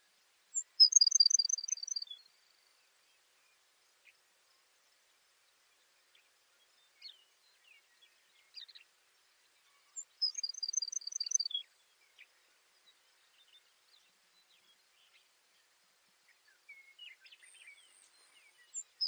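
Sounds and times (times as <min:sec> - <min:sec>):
faint bird chirps: 0:00.0 - 0:19.0
sparrow singing trill: 0:00.5 - 0:02.3, 0:09.8 - 0:12.3, 0:16.4 - 0:19.0.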